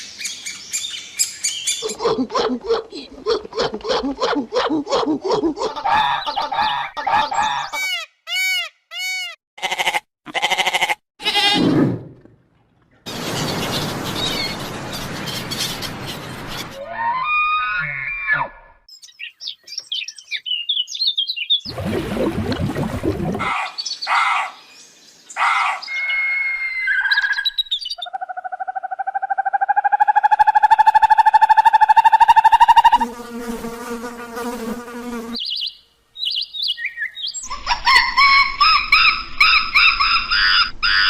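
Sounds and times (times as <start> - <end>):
bird chirping: 0.0 - 2.0, 13.1 - 16.8, 18.9 - 21.7, 23.5 - 28.9, 35.4 - 40.5.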